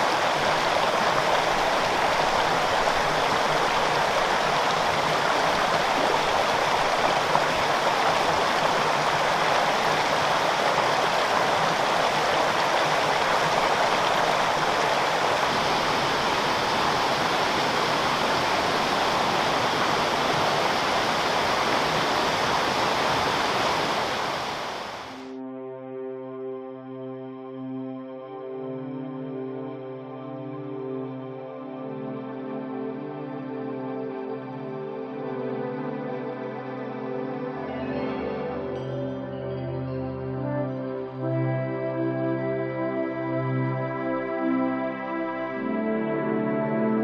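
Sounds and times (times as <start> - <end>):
waterfall and stream rushing: 0.0 - 25.3.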